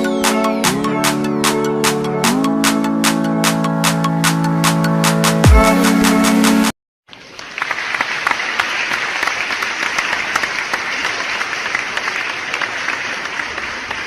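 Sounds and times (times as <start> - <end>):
crowd applause: 7.1 - 14.0.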